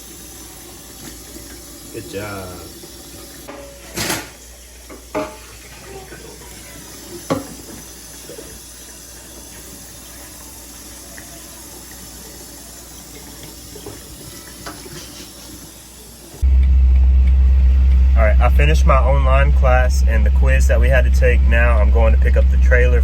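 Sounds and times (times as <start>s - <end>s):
faucet running into sink: 0.0s - 16.4s
dishes knocking: 3.5s - 5.5s, 7.2s - 7.9s.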